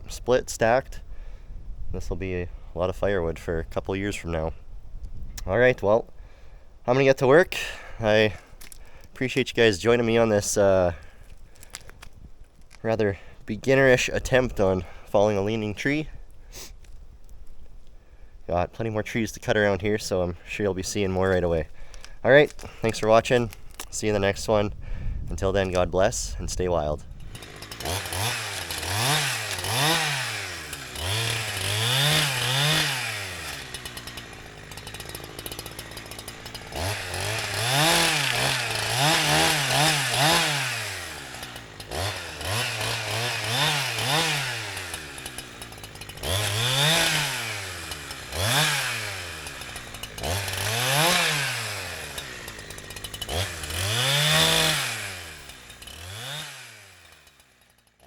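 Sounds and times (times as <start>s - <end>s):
chainsaw revving: 27.1s - 58.0s.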